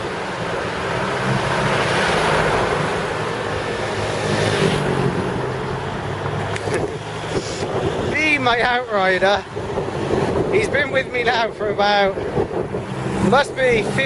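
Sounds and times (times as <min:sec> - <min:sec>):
low vehicle engine hum: 0:00.0 - 0:14.0
wind rushing over microphone: 0:00.0 - 0:14.0.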